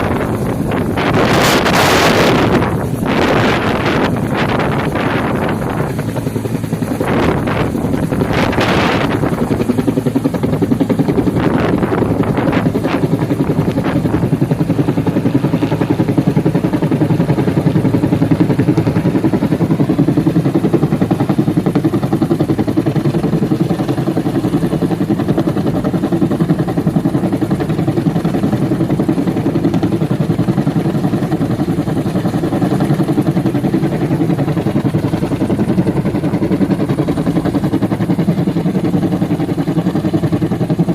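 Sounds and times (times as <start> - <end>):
turbine noise: 0.0 - 25.8
helicopter rotor beating: 0.0 - 40.9
wind gusts: 0.0 - 40.9.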